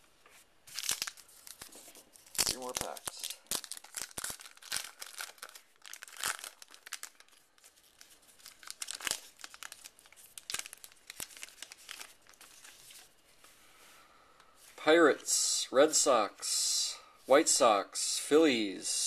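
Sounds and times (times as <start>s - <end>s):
wrapper crinkling and tearing: 0.7s - 13.1s.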